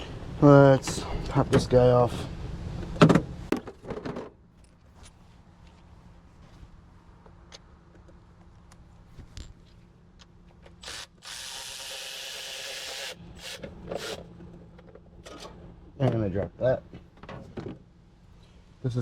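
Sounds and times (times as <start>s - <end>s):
cordless ratchet whirring: 10.8s - 14.2s.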